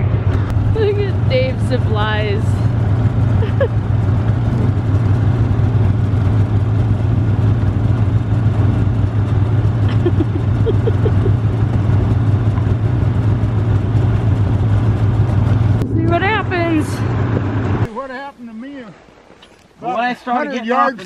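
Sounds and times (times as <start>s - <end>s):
snowmobile engine running: 0.0s - 17.9s.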